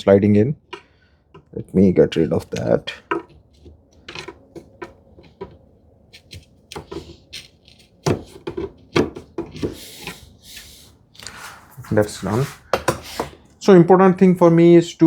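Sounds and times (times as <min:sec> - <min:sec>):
hand tool scraping wood: 0:02.2 - 0:13.4.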